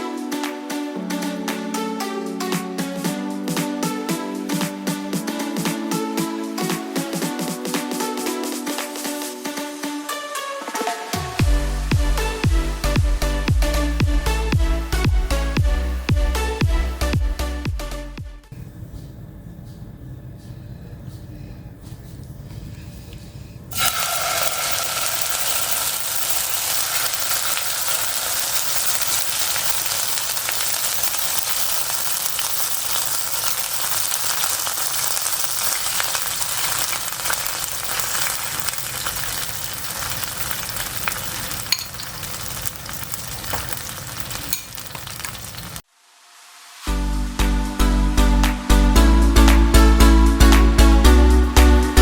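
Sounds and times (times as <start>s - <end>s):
food sizzling in a pan: 23.7s - 46.8s
stirring clicks: 23.8s - 45.8s.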